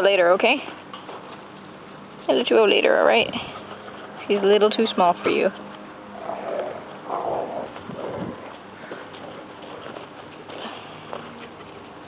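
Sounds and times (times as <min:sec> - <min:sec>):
dog growling: 0:06.1 - 0:08.5.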